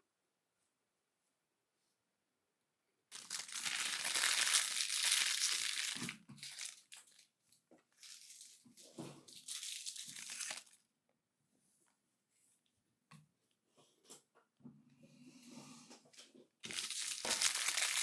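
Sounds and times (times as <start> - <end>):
crinkling and rustling: 3.1 - 10.8, 16.2 - 18.0.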